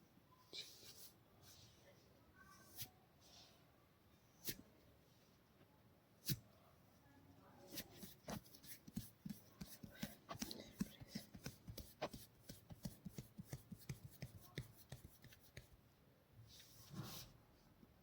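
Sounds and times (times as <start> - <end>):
hands patting and tapping: 8.0 - 15.8.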